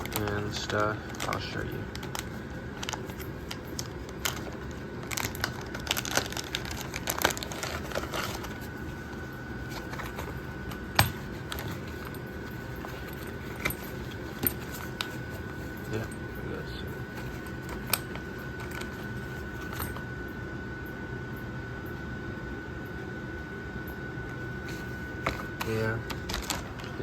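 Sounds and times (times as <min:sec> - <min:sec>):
small items clicking and rattling: 0:00.0 - 0:08.8, 0:09.6 - 0:16.2, 0:17.2 - 0:20.0, 0:25.2 - 0:27.0
steady low hum: 0:00.0 - 0:27.0.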